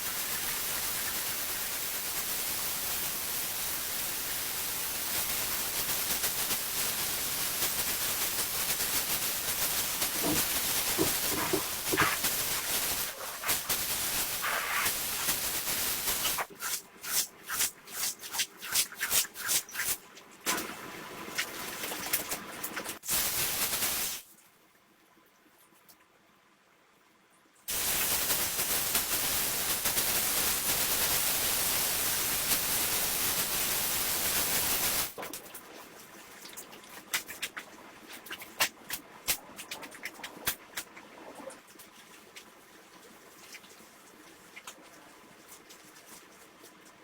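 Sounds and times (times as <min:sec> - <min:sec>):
hissing spray jet: 0:00.0 - 0:16.5, 0:23.1 - 0:24.2, 0:27.7 - 0:35.2.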